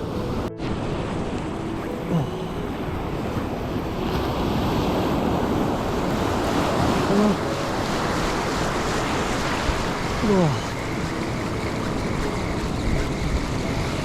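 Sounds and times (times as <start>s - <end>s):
ocean waves breaking: 0.0s - 14.0s
wind buffeting microphone: 0.0s - 14.0s
short voiced exclamation: 10.2s - 10.6s.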